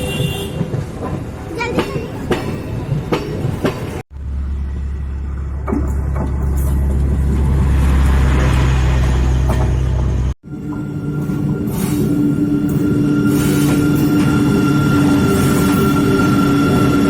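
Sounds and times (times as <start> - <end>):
train wheels clicking over rail joints: 0.0 - 4.0
large engine droning: 4.1 - 17.0.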